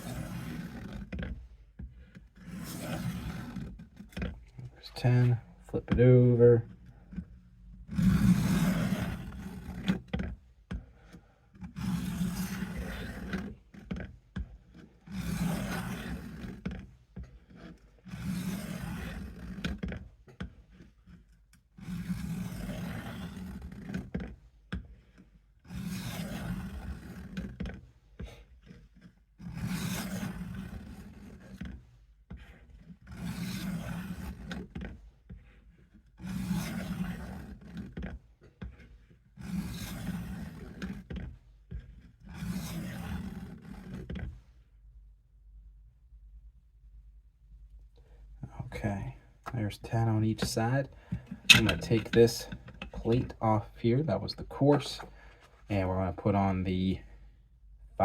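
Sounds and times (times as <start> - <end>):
knife scraping on sharpener: 51.4 - 52.2.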